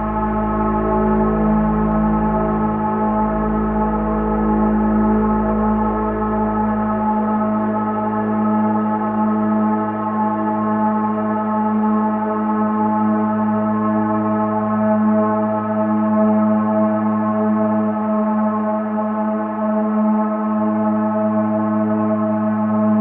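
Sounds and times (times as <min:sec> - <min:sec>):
deep hum: 0:00.0 - 0:07.7, 0:21.4 - 0:23.0
gong-like ringing drone: 0:20.6 - 0:23.0.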